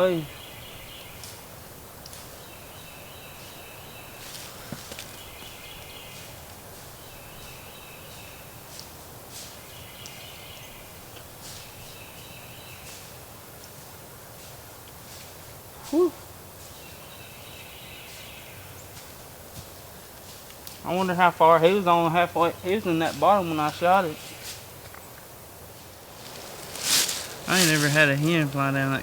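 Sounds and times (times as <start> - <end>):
bird singing trilled phrase: 0.0 - 0.6, 20.9 - 24.4
light clicks and rustles: 4.2 - 5.6.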